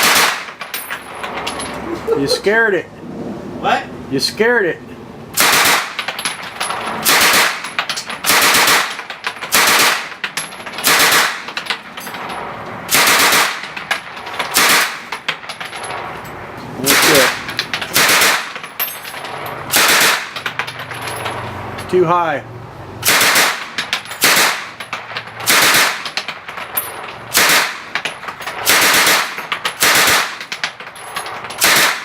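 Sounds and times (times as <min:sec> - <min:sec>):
machine gun bursts: 0:00.0 - 0:00.6, 0:05.4 - 0:06.1, 0:06.7 - 0:07.6, 0:08.2 - 0:10.1, 0:10.8 - 0:11.6, 0:12.9 - 0:13.8, 0:14.5 - 0:15.1, 0:16.8 - 0:18.6, 0:19.7 - 0:20.4, 0:23.0 - 0:24.8, 0:25.4 - 0:26.2, 0:27.3 - 0:27.8, 0:28.6 - 0:30.4, 0:31.6 - 0:32.0.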